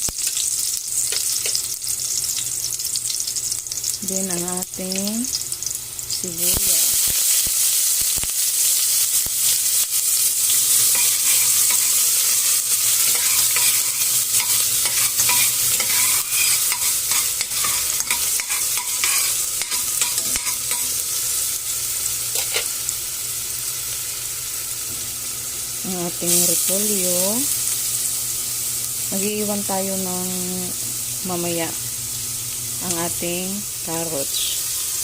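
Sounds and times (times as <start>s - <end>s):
onions sizzling in oil: 0.0s - 35.0s
utensil scraping pan: 10.7s - 12.2s, 13.0s - 20.9s, 22.4s - 22.7s.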